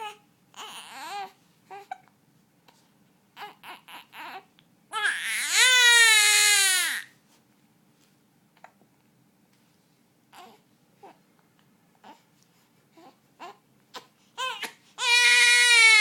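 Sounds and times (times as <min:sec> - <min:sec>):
infant crying: 0:00.0 - 0:02.1, 0:03.4 - 0:07.1, 0:10.3 - 0:11.2, 0:13.0 - 0:16.0.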